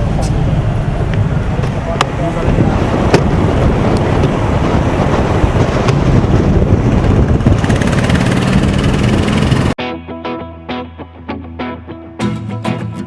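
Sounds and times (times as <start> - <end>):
road traffic noise: 0.0 - 9.8
wind rumbling on microphone: 0.0 - 9.8
guitar music: 9.8 - 13.0.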